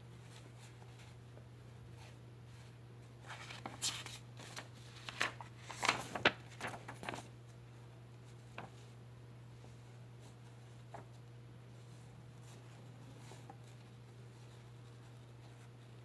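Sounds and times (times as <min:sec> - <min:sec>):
steady low hum: 0:00.0 - 0:16.0
packaging rustling: 0:03.4 - 0:07.3.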